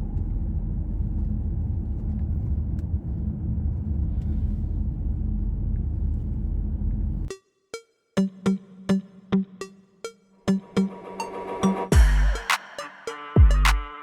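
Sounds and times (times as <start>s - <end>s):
car engine and road noise: 0.0s - 7.3s.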